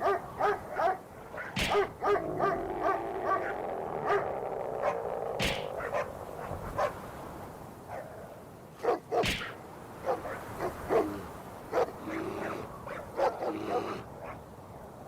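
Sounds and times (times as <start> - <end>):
dogs barking and yelping: 0.0 - 7.0, 8.8 - 14.4
sharp swishing: 1.6 - 2.0, 5.4 - 5.8, 9.2 - 9.6.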